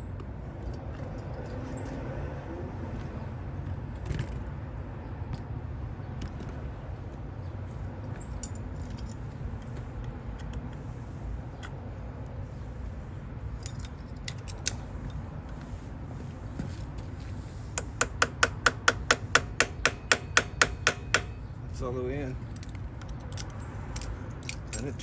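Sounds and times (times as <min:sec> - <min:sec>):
key jangling in lock: 0:13.6 - 0:15.2, 0:22.5 - 0:25.0.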